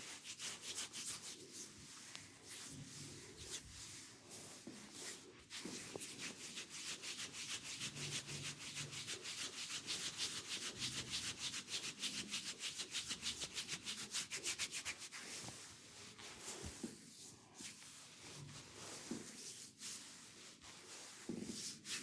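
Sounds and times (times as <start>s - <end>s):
hands rubbing briskly: 5.0s - 15.4s.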